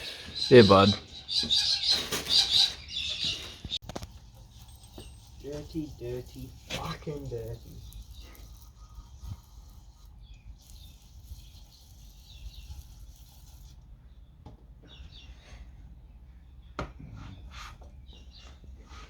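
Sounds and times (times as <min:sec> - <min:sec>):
faint scraping on engine parts: 0:01.9 - 0:13.9.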